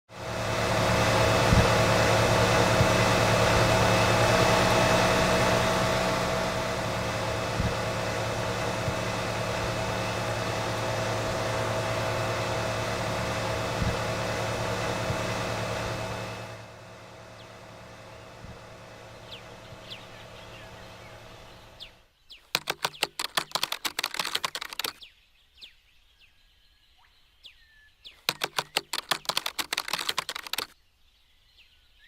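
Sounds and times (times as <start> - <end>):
air conditioner running: 0.2 - 22.0
faint clicks: 22.6 - 25.0, 28.3 - 30.8.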